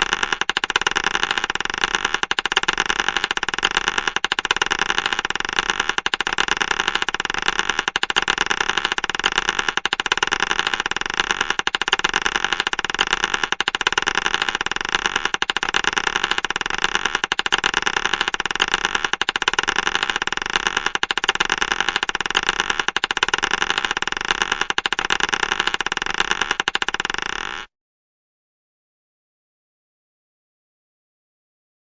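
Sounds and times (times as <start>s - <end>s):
marbles clattering and rolling: 0.0s - 27.7s.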